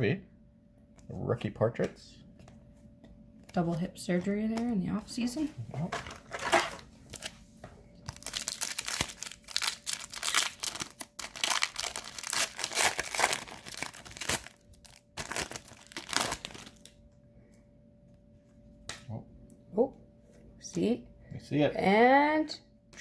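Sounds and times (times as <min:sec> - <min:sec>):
card pack wrapper crinkling: 0:05.8 - 0:07.4, 0:08.0 - 0:17.0.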